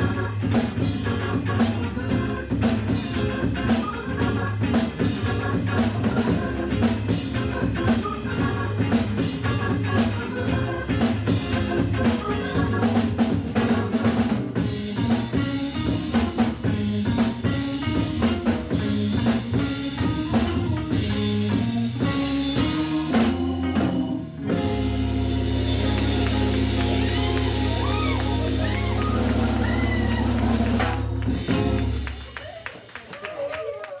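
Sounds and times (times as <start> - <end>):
organ trio playing: 0.0 - 32.4
sliding guitar-like pitches: 14.6 - 32.1
busy drum hits: 24.5 - 32.4.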